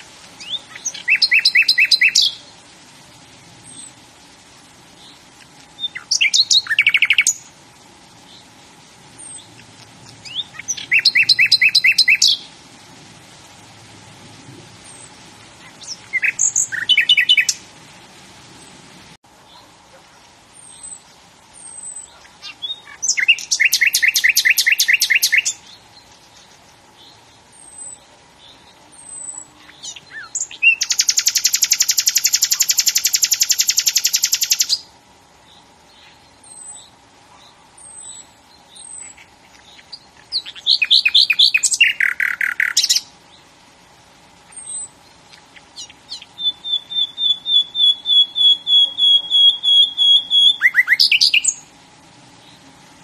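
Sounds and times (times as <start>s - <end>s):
songbird trilling: 0.4s - 2.5s, 5.8s - 7.5s, 9.2s - 12.5s, 14.9s - 17.6s, 21.6s - 34.9s, 37.8s - 43.1s, 44.5s - 51.7s
short high bird chirps: 45.8s - 51.6s.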